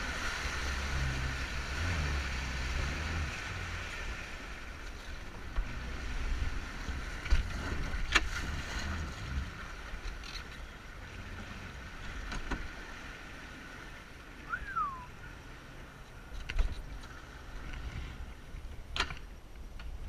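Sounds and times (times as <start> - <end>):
jet ski engine hum: 0.0 - 20.0
wind and water rush: 0.0 - 20.0.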